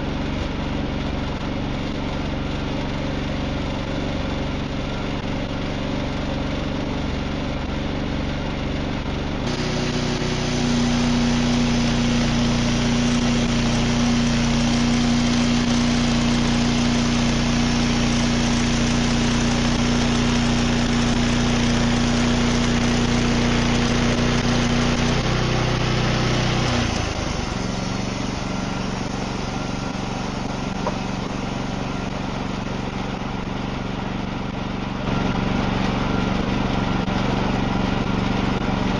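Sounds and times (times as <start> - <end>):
sawmill engine running: 0.0 - 38.9
band saw blade cutting log: 9.4 - 33.5.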